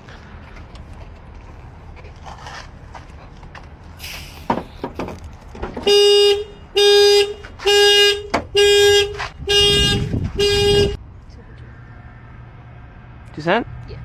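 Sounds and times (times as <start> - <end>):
car horn pulsing alarm: 5.8 - 11.0.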